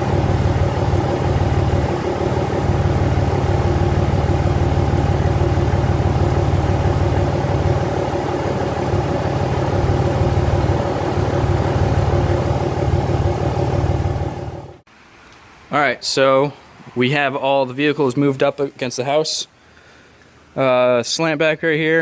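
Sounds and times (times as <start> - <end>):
vehicle engine running: 0.0 - 14.9.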